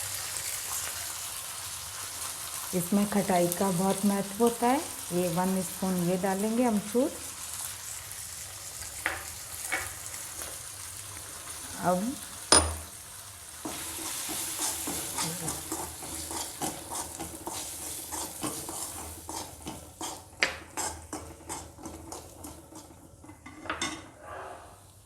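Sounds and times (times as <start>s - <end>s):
oil sizzling: 0.0s - 23.9s
spoon scraping a pan: 12.5s - 24.8s.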